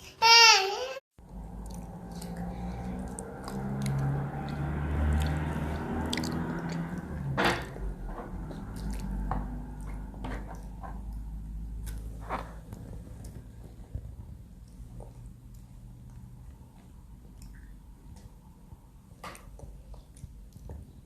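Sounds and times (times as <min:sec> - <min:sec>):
person chewing: 0:01.4 - 0:07.2, 0:08.6 - 0:09.3.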